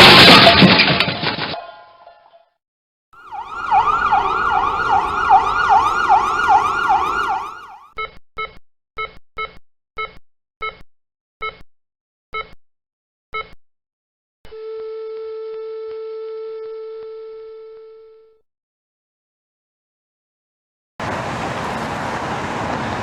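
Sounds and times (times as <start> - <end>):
emergency siren wailing: 3.2 - 7.9
heart monitor beeps: 8.0 - 11.7, 12.3 - 12.6, 13.3 - 13.6.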